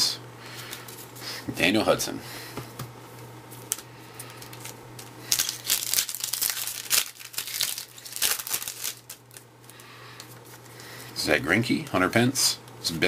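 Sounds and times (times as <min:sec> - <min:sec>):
wrapper tearing and crinkling: 0:03.6 - 0:09.8.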